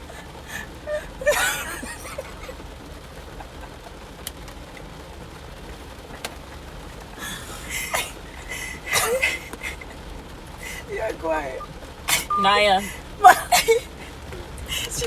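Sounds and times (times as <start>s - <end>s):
person sobbing: 0.0s - 2.5s, 7.2s - 10.0s, 12.1s - 15.0s.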